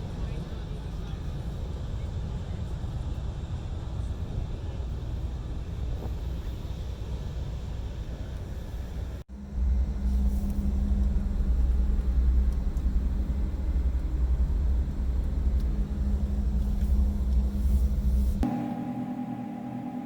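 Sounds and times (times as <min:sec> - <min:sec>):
vehicle engine running: 0:09.3 - 0:20.0.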